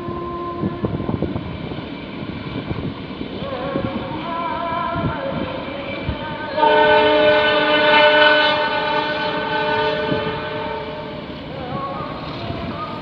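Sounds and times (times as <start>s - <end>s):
train passing at speed: 0.0s - 13.0s
locomotive horn chord: 6.5s - 11.3s.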